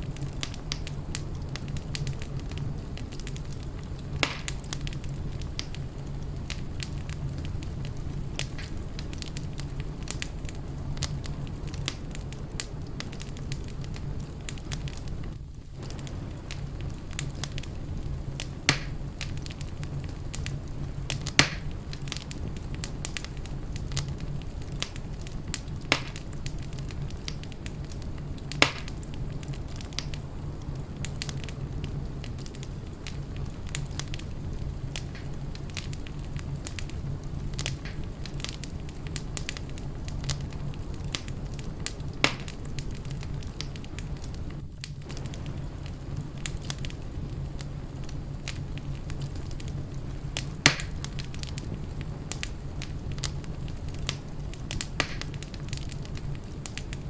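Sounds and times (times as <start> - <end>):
wood fire crackling: 0.0 - 57.0
sharp loud pops of fire: 4.2 - 4.8, 18.4 - 19.4, 21.1 - 22.3, 25.9 - 26.3, 28.5 - 29.1, 41.9 - 42.8, 50.4 - 51.3, 54.1 - 55.6.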